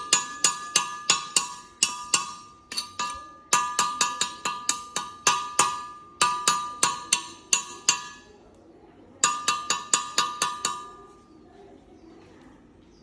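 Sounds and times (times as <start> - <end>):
hammer striking steel: 0.0 - 8.4, 9.2 - 11.2.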